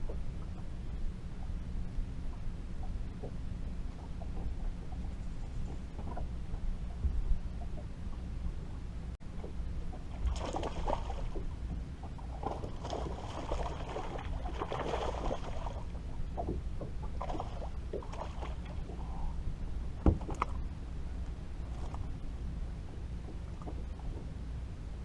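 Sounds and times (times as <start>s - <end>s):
water splashing around boat: 0.0s - 24.5s
steady low rumble: 0.0s - 25.0s
knock against boat: 20.0s - 20.5s.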